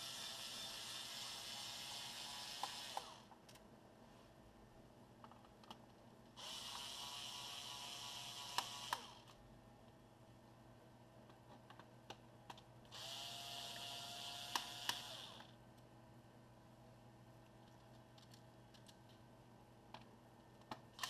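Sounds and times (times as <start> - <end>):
electric screwdriver whining: 0.0 - 3.3, 6.4 - 9.3, 12.9 - 15.5.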